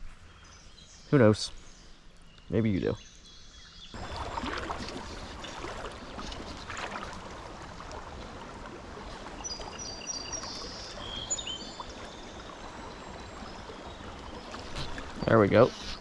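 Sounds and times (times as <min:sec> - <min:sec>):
creek water running: 0:04.0 - 0:16.0
water splashes: 0:04.0 - 0:16.0.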